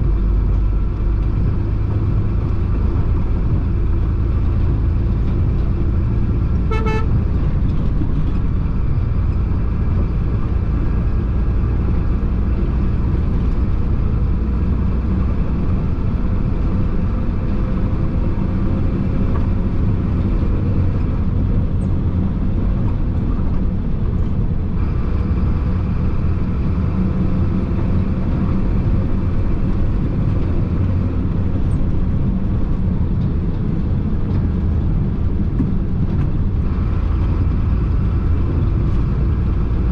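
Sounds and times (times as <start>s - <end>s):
road noise: 0.0s - 39.9s
truck diesel engine droning: 0.0s - 39.9s
horn toot: 6.7s - 7.1s.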